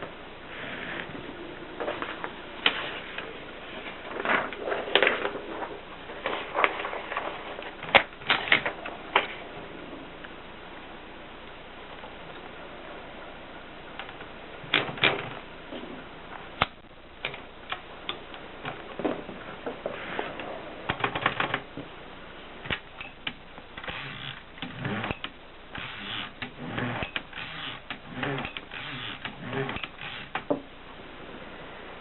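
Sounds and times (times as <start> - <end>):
typewriter clicking and clattering: 20.9 - 21.6.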